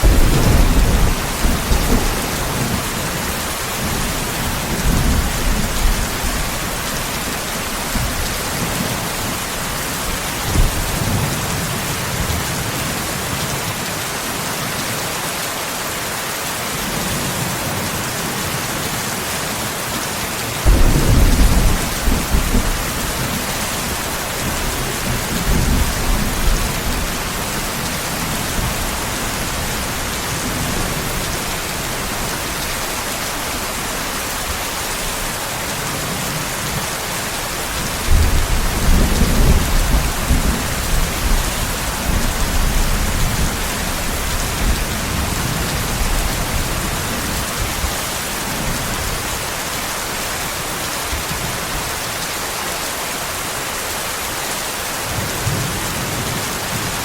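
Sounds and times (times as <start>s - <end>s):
thunder rumbling: 0.0s - 12.4s, 20.6s - 35.3s, 37.7s - 47.9s
steady rain: 0.0s - 57.0s.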